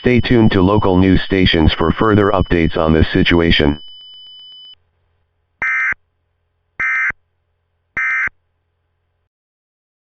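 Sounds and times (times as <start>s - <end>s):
digital data tone bursts: 0.0s - 4.1s, 5.6s - 6.0s, 6.8s - 7.2s, 8.0s - 8.3s.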